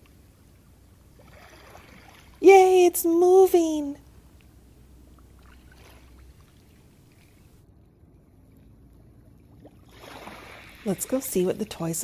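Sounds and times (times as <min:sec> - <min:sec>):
sea water lapping on rocks: 0:05.3 - 0:07.5, 0:09.7 - 0:12.0.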